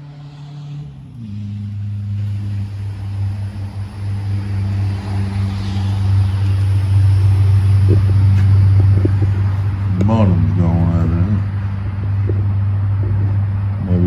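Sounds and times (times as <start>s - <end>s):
motor humming: 0.0s - 14.0s.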